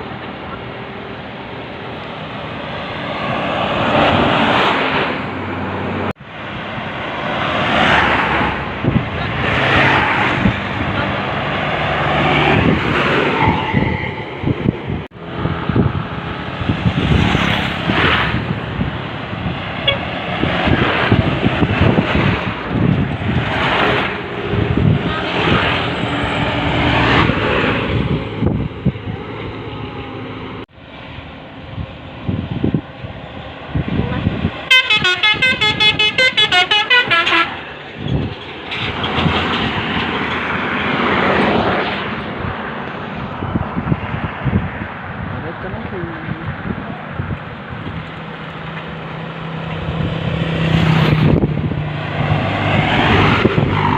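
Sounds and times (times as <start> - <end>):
vehicle passing with low rumble: 0.0 - 34.7, 37.1 - 53.9
bus engine and tyre noise: 0.0 - 53.9
musical air horn pulsing tune: 19.8 - 20.1, 34.7 - 37.6.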